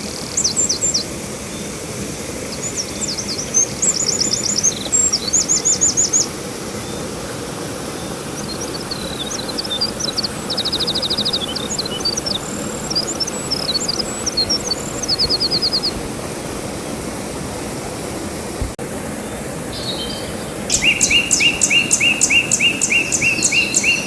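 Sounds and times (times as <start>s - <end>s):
songbirds singing: 0.0s - 1.8s, 2.4s - 7.2s, 7.8s - 16.0s, 19.7s - 24.0s.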